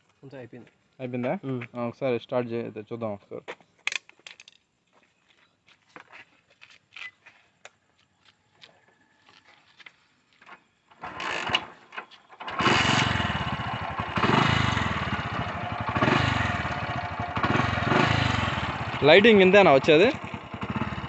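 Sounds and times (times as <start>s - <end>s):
motorcycle engine starting and running: 10.9s - 21.0s.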